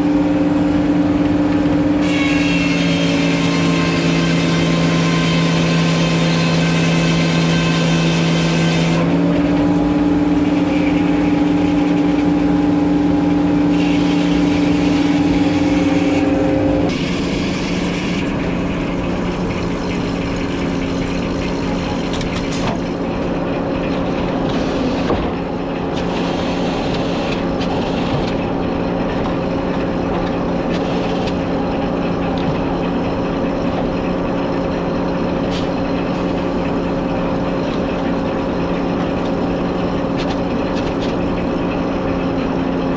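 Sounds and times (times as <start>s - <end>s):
sawmill engine sawing log: 0.0s - 42.9s.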